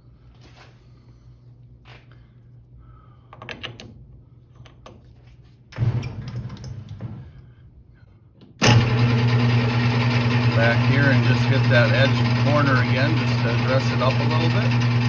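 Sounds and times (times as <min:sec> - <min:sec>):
lathe motor humming: 0:08.6 - 0:15.0.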